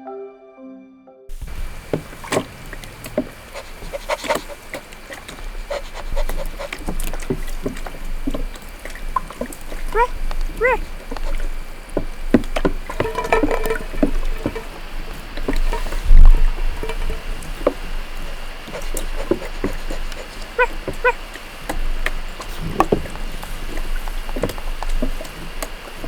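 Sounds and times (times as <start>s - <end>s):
animal-like calls: 9.7s - 11.7s, 13.0s - 24.1s.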